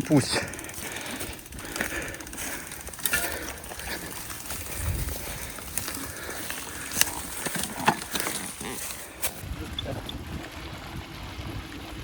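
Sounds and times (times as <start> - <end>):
bicycle parts rattling: 0.0 - 9.4.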